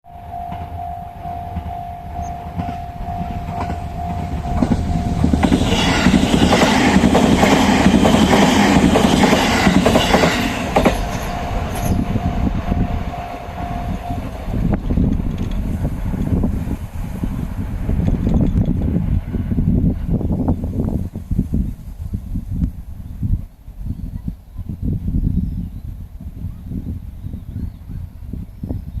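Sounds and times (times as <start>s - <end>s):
level crossing bell ringing: 0.1s - 5.4s, 10.9s - 14.7s
train rumble and wheel clatter: 0.1s - 24.7s.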